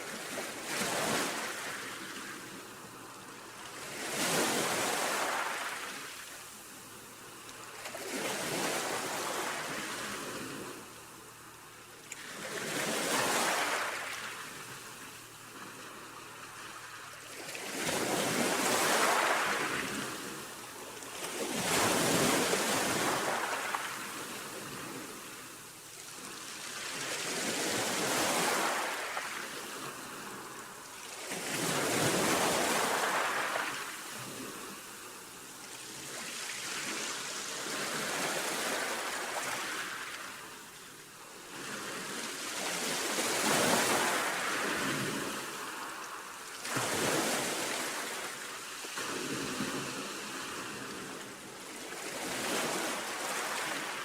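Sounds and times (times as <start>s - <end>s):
sea waves breaking: 3.8s - 6.2s, 12.2s - 15.0s, 15.6s - 20.5s, 21.2s - 25.3s, 31.2s - 34.8s, 42.0s - 54.0s.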